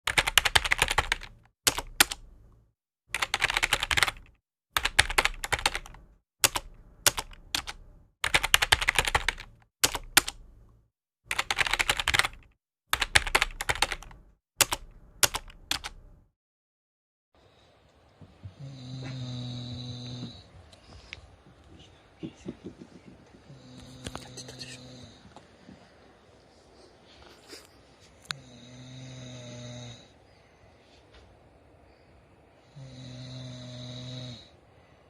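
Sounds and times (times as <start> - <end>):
keyboard typing clicks: 0.1 - 2.3, 3.2 - 10.7, 11.3 - 16.2.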